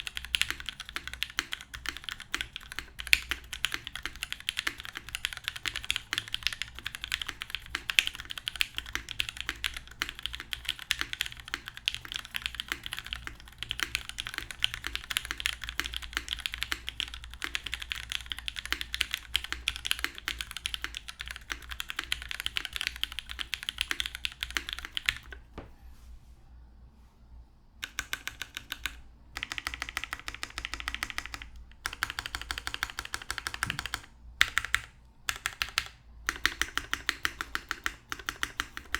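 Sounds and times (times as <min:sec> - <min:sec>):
fast typing on mechanical keyboard: 0:00.0 - 0:25.4, 0:27.8 - 0:38.9.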